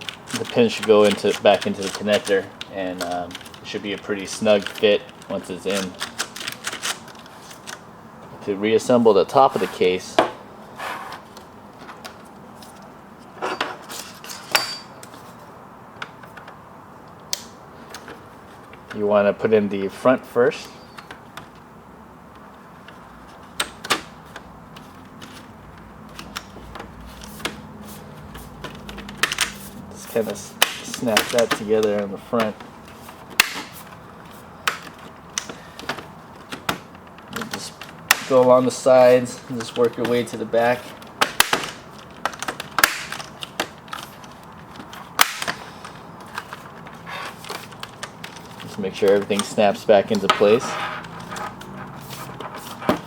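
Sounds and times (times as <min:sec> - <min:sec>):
handling noise: 0:00.0 - 0:53.0
plastic case clips snapping: 0:41.0 - 0:48.5.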